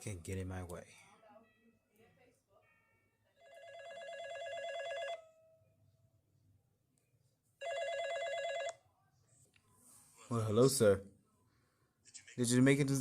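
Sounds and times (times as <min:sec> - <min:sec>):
telephone ringing: 0:03.3 - 0:05.6, 0:07.6 - 0:08.8.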